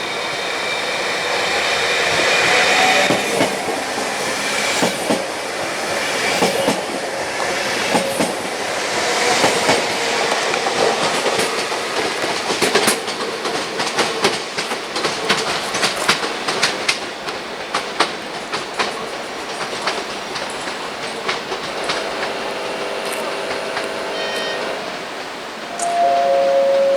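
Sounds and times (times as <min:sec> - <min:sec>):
train wheels clattering over rails: 0:00.0 - 0:25.8
faint wheel squeal: 0:24.0 - 0:24.9.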